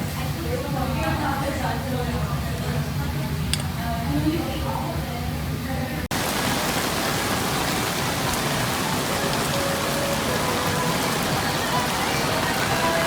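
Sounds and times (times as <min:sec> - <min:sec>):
heavy rain pouring: 0:06.1 - 0:13.0.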